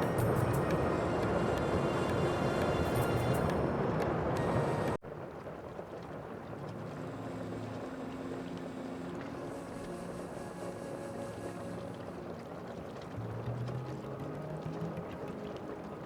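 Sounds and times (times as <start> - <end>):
water wash noise: 0.0 - 16.0
faint low drone: 6.6 - 16.0.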